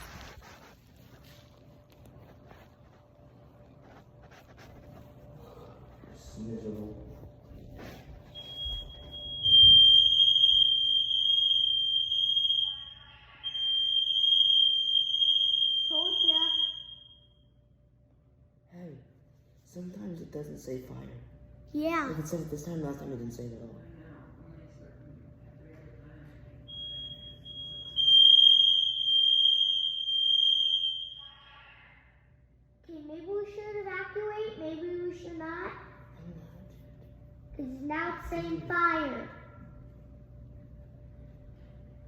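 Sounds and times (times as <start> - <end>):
fire alarm tone: 8.3 - 17.6, 26.7 - 31.6.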